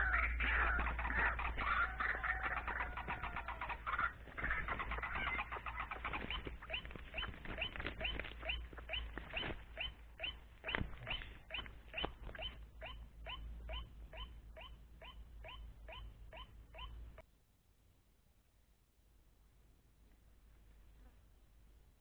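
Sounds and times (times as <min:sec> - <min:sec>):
waterhen calling: 0:00.0 - 0:17.2.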